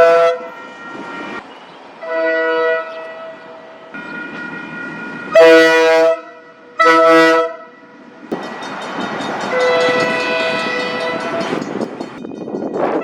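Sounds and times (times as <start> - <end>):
locomotive air horn blasts: 0.0 - 1.4, 2.0 - 4.4, 5.3 - 8.0, 9.5 - 11.6
train noise: 0.0 - 13.0.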